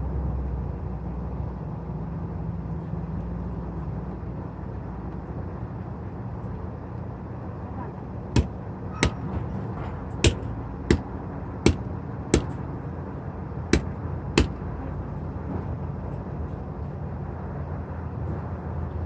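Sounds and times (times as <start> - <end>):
steady low hum: 3.4 - 17.5
sharp knocks: 8.3 - 12.7, 13.7 - 14.7.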